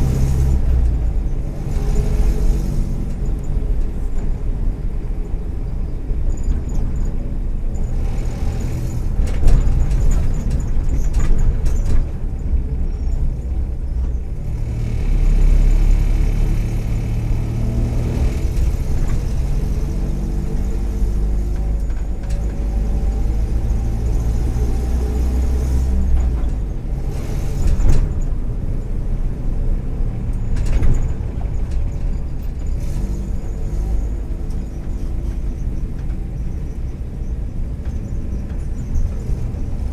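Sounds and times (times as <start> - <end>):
sharp knocks and rattles: 7.8 - 12.6.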